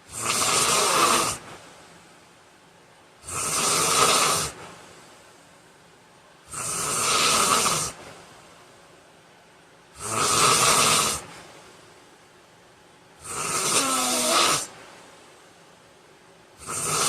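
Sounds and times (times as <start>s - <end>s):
man snoring loudly: 0.1s - 1.4s, 3.2s - 4.6s, 6.5s - 8.0s, 10.0s - 11.3s, 13.2s - 14.7s, 16.6s - 17.0s.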